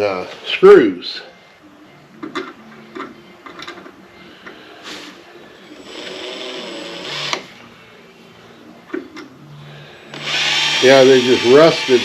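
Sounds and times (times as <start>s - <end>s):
power drill running: 5.8s - 7.5s, 10.1s - 12.0s.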